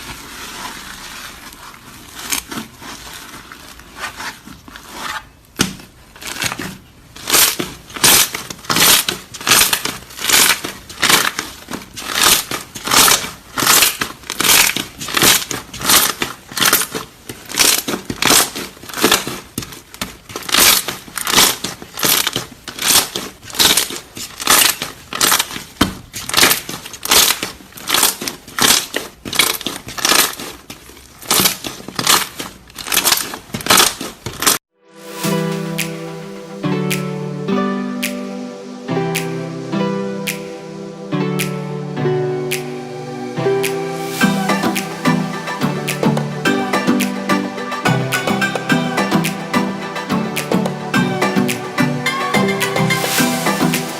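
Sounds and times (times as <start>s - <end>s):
hands kneading crackling slime: 0.0s - 35.2s.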